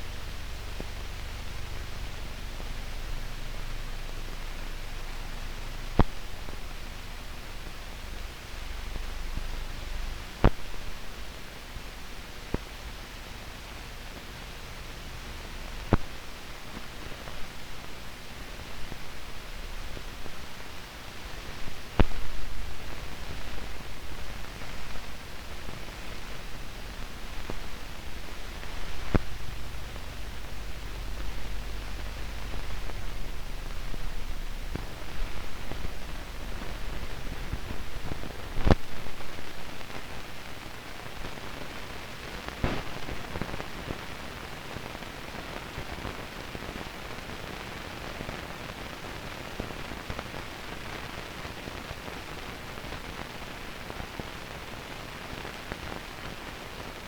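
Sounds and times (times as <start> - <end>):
film soundtrack hiss and crackle: 0.0 - 57.0
low hum: 26.4 - 39.2
sharp pops: 42.6 - 42.9.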